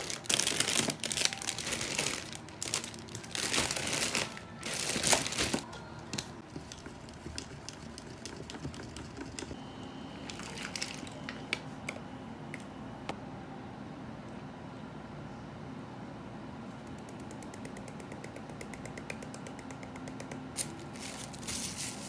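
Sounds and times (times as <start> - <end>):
paper or plastic crinkling: 0.0 - 5.7, 20.6 - 22.0.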